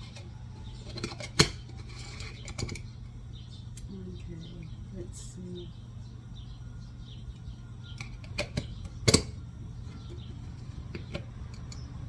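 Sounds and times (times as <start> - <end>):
metal lid clicking and knocking: 0.0 - 2.9, 8.0 - 9.4, 10.0 - 12.0
steady low hum: 0.0 - 12.0.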